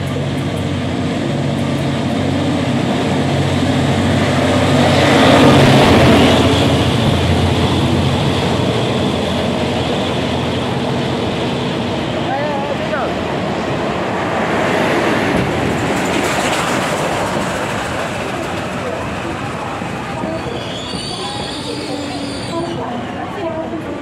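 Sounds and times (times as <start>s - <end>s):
train engine drone: 0.0s - 24.0s
train rumble: 0.0s - 24.0s.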